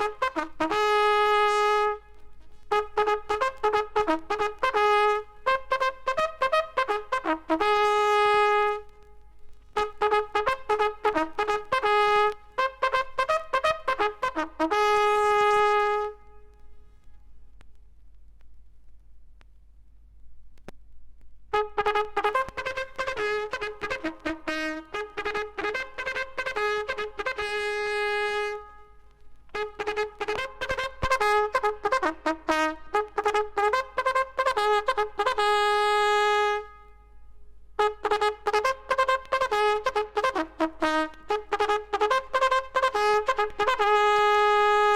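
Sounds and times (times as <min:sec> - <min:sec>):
vinyl record surface noise: 0:00.0 - 0:35.4
bugle call: 0:02.7 - 0:08.9, 0:09.8 - 0:16.5, 0:21.6 - 0:36.9, 0:37.8 - 0:44.9.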